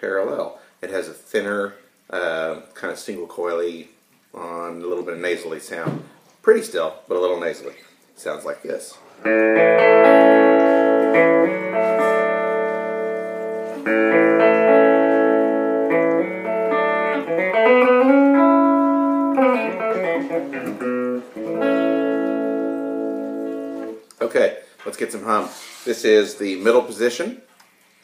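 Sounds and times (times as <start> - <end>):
electric guitar strummed chords: 9.2 - 24.0.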